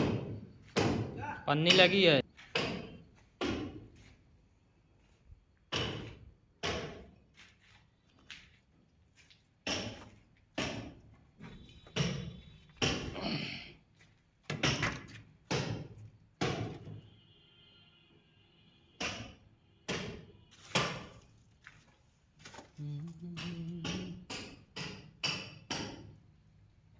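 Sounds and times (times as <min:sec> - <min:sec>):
hammer blows: 0:23.4 - 0:25.0.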